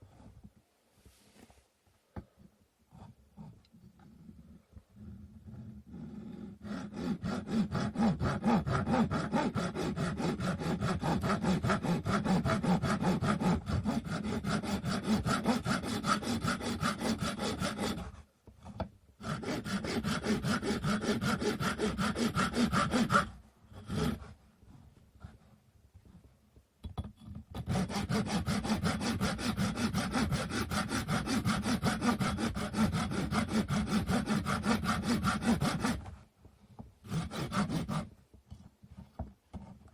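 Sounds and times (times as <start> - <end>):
hand saw cutting wood: 5.0 - 24.4, 27.5 - 36.2, 37.0 - 38.1.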